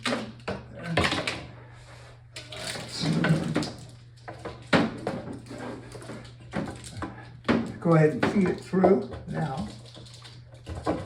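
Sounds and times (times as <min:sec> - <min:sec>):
sliding and scraping: 0:01.8 - 0:08.6.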